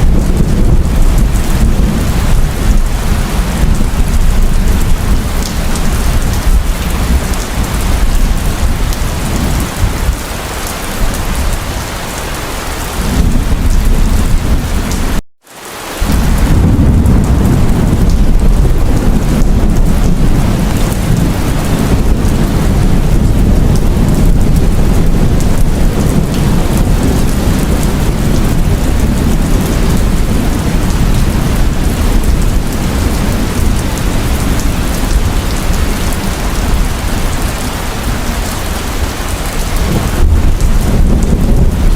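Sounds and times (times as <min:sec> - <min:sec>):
rumble of thunder: 0:00.0 - 0:11.9, 0:12.8 - 0:15.2, 0:16.0 - 0:41.9
heavy rain pouring: 0:00.0 - 0:41.9.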